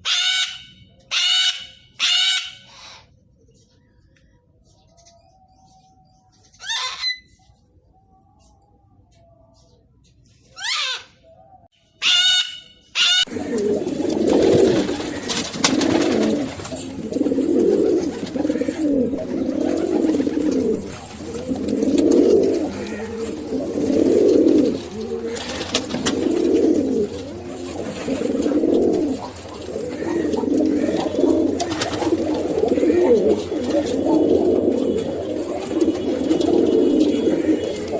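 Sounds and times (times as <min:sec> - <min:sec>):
pigeons cooing: 0:13.0 - 0:37.9.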